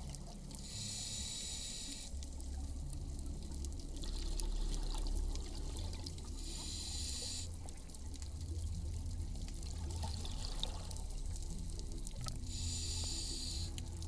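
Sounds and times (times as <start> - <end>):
regulator breathing hiss: 0.6 - 2.1, 6.4 - 7.5, 12.5 - 13.8.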